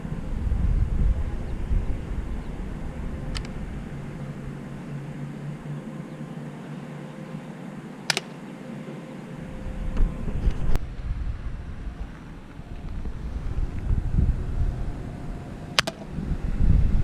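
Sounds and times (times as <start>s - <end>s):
low rumbling noise: 0.0s - 17.0s
bb gun firing crack: 8.1s - 8.4s, 15.8s - 16.1s
sharp click: 8.1s - 8.4s, 15.8s - 16.0s.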